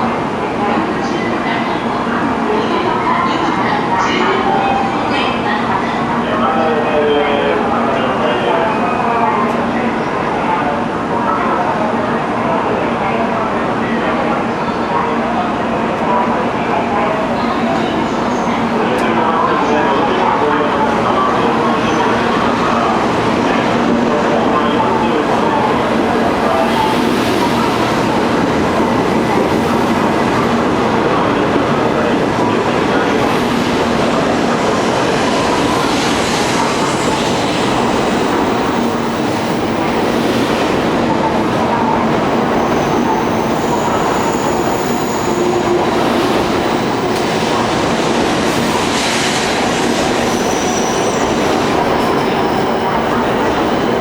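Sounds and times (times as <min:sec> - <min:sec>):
train wheels rumbling on rail: 0:20.9 - 0:54.0.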